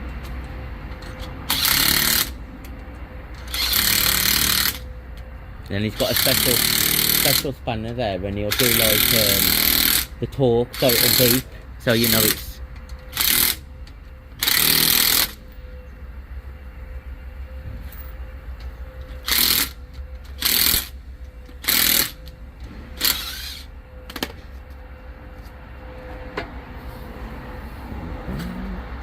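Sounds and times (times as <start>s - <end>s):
pneumatic impact wrench bursts: 1.5s - 2.4s, 3.4s - 4.9s, 6.0s - 7.5s, 8.5s - 10.1s, 10.7s - 12.4s, 13.1s - 13.6s, 14.4s - 15.5s, 19.1s - 23.7s.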